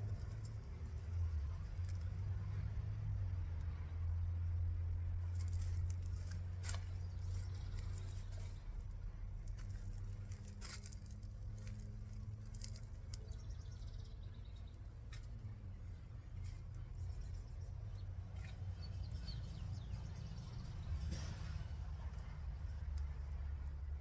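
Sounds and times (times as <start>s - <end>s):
low engine hum: 0.0s - 24.0s
birds chirping: 9.7s - 21.5s.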